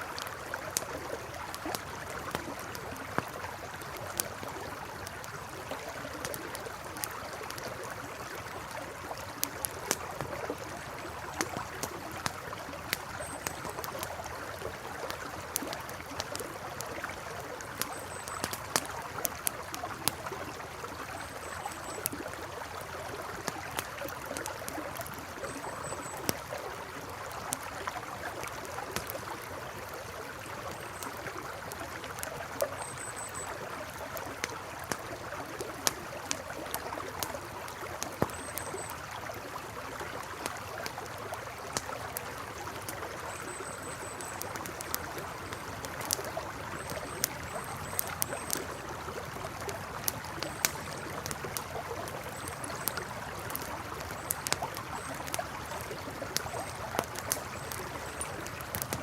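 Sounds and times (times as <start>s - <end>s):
campfire crackling and popping: 0.0s - 59.0s
river flowing: 0.0s - 59.0s.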